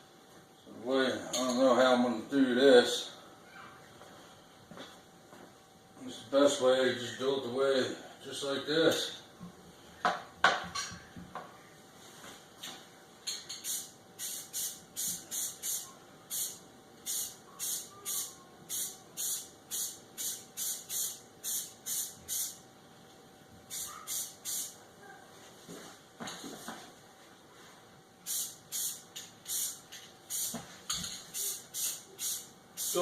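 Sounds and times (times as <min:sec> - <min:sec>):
spray paint can bursts: 0:13.6 - 0:22.6, 0:23.7 - 0:24.8, 0:28.3 - 0:30.6, 0:31.3 - 0:33.0.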